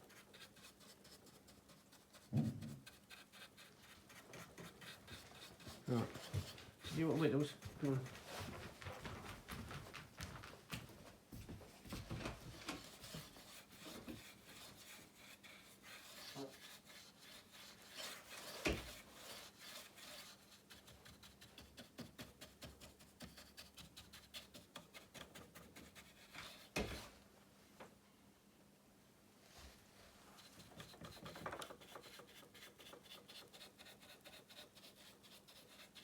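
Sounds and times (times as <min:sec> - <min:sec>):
brush rubbing on wood: 0:00.0 - 0:09.6, 0:11.9 - 0:27.1, 0:30.2 - 0:36.0.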